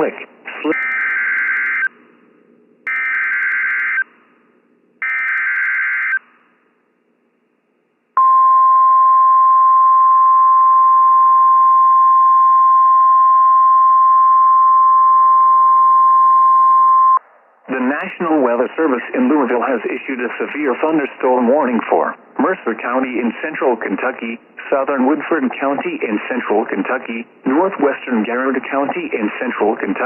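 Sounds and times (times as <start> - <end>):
steady warning alarm tone: 0.6 - 2.0, 2.9 - 4.2, 5.0 - 6.3.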